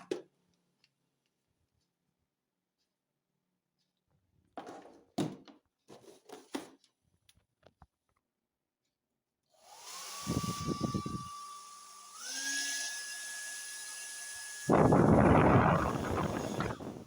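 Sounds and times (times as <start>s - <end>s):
hair dryer motor whining: 9.7s - 17.0s
rush of air: 14.7s - 17.0s.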